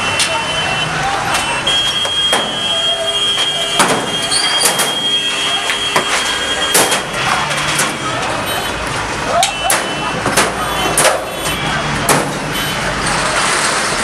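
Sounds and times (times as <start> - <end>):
noisy street background: 0.0 - 14.0
sharp knocks and bangs: 1.9 - 2.7, 3.4 - 5.1, 5.9 - 8.1, 9.6 - 12.6.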